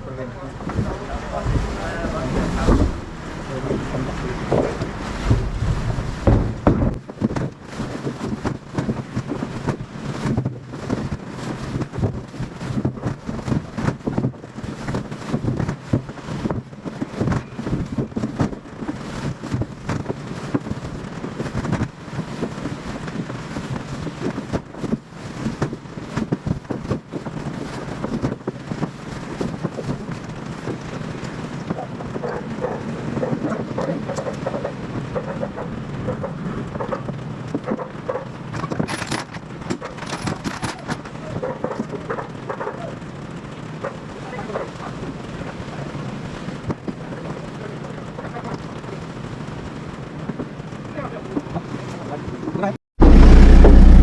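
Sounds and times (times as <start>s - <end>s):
moving vehicle running noise: 0.0s - 54.0s
wind buffeting microphone: 0.0s - 54.0s.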